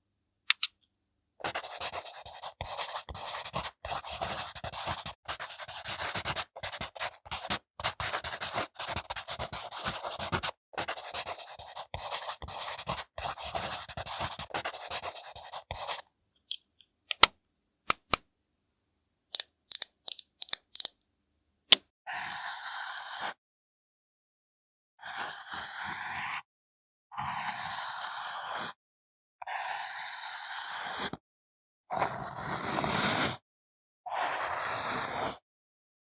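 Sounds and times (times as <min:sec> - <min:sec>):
tool scratching fruit peel: 0:19.4 - 0:20.9.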